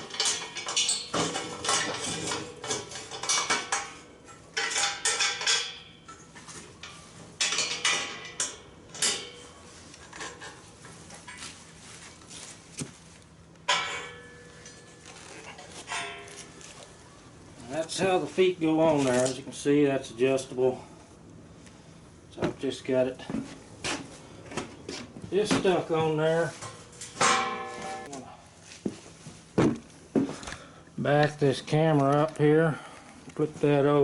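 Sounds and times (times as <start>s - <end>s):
steel hardware clanking: 0.0s - 10.6s, 13.7s - 16.8s, 25.4s - 28.2s.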